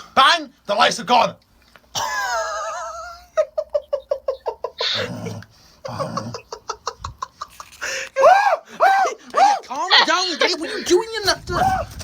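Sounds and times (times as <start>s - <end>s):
rising and falling cries: 2.2s - 6.7s
person laughing in rapid pulses: 2.3s - 7.8s
breathy gasps: 7.8s - 9.3s.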